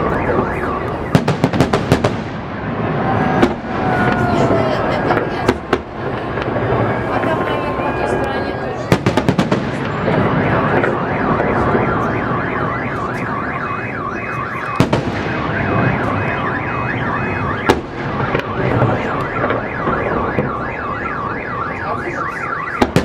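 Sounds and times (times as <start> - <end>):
car alarm wailing: 0.0 - 1.8, 2.4 - 23.0
fireworks crackling: 0.0 - 23.0
sharp firework bangs: 1.1 - 7.0, 8.9 - 20.7, 22.7 - 23.0.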